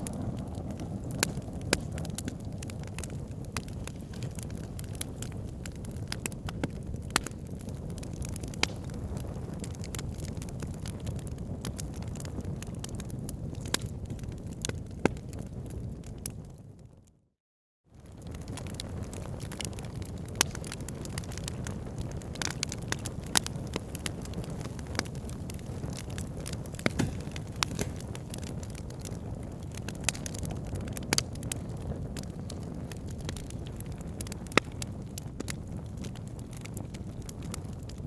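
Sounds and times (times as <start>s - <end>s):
fire crackling and snapping: 0.0s - 16.9s, 18.0s - 38.0s
low rumble of flames: 0.0s - 17.1s, 17.9s - 38.0s.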